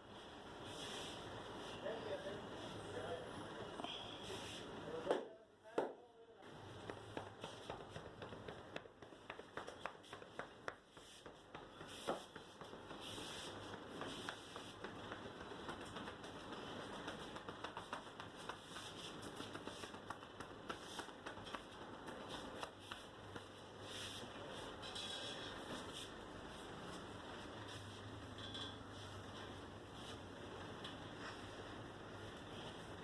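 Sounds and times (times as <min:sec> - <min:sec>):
quick taps and clicks: 0:06.8 - 0:13.0, 0:13.6 - 0:23.6
fingers rubbing through hair: 0:07.2 - 0:24.8.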